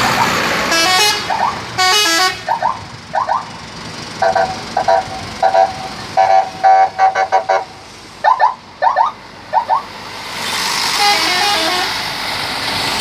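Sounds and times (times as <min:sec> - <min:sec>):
musical air horn notes: 0:11.0 - 0:12.0.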